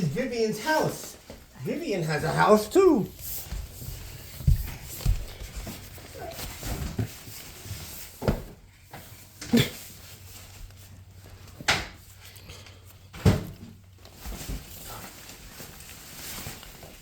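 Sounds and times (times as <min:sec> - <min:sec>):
knocks of objects being handled: 0:03.2 - 0:07.5.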